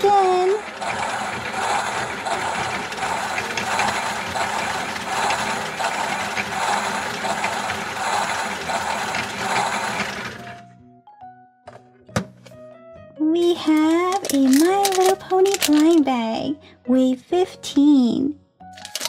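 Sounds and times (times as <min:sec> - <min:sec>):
toy washing machine motor whirring: 0:00.0 - 0:10.6, 0:13.7 - 0:16.0, 0:18.8 - 0:19.0.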